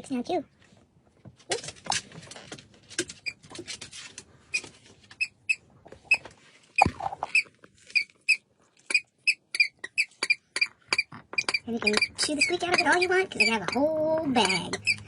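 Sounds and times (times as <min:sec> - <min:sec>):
dog toy squeaking: 0:04.5 - 0:15.0.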